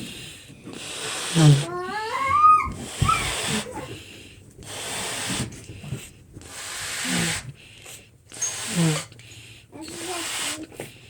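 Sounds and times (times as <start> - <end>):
breath puffs into balloon: 0.0 - 11.0
balloon squeak: 1.4 - 3.8.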